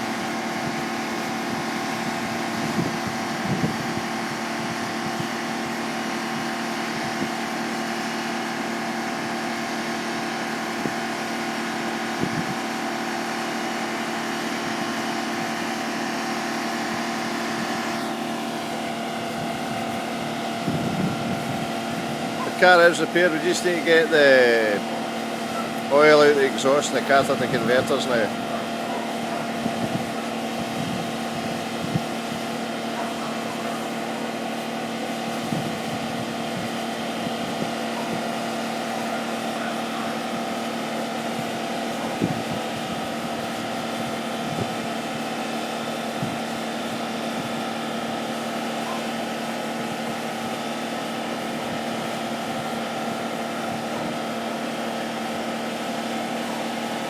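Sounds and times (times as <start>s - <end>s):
car engine running: 13.7s - 40.5s.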